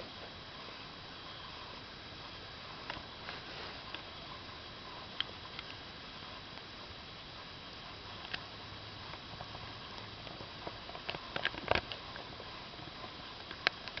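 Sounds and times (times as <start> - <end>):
puppy gnawing on a chew toy: 9.1 - 12.4.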